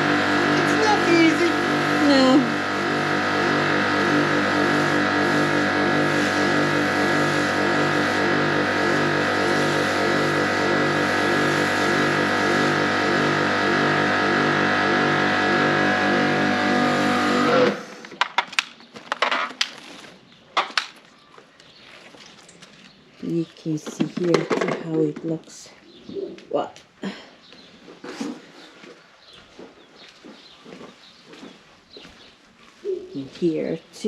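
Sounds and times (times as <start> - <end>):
pressure washer running: 0.0 - 18.1.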